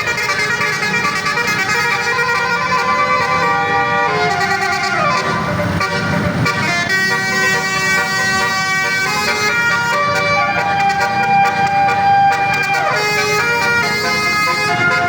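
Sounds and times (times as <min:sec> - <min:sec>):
low bus rumble: 0:00.0 - 0:15.0
multi-tone horn playing chords: 0:00.0 - 0:15.0.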